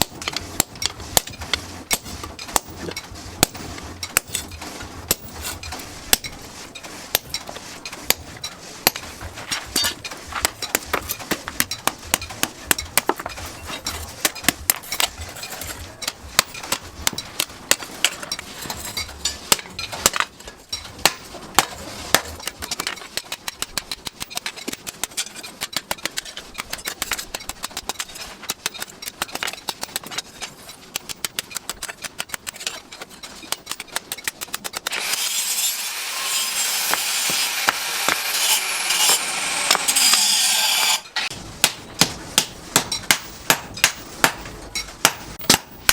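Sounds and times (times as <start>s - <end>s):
hammer striking steel: 34.9s - 45.9s.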